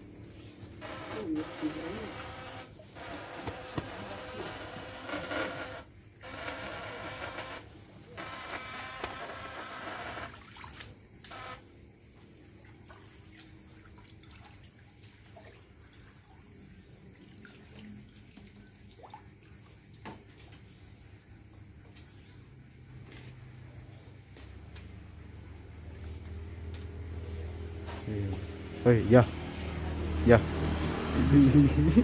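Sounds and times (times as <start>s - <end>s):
crickets trilling: 0.0s - 32.0s
water sloshing and splashing: 10.2s - 11.2s, 12.2s - 21.3s.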